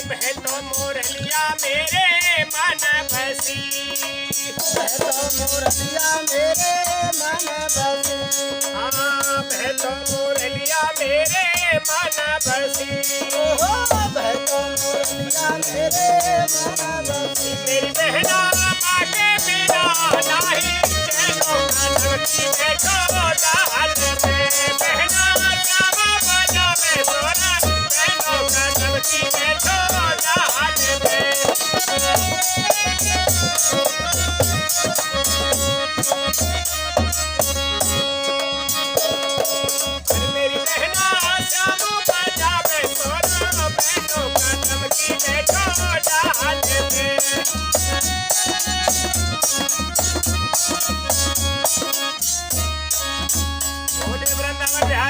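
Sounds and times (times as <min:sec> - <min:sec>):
fast rattling percussion: 0:00.0 - 0:55.0
sliding melody line: 0:13.3 - 0:36.6.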